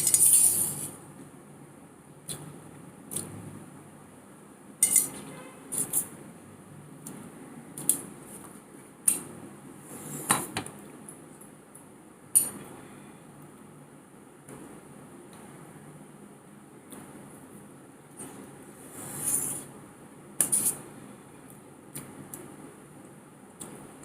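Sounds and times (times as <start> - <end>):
cutlery clinking on plate: 4.8 - 5.2.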